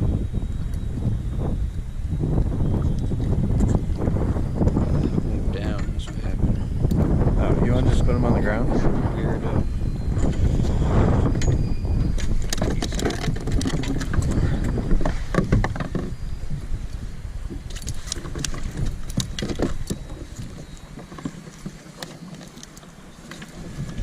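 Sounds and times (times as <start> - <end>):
clicks and knocks of handling: 12.2 - 14.4, 17.7 - 23.9.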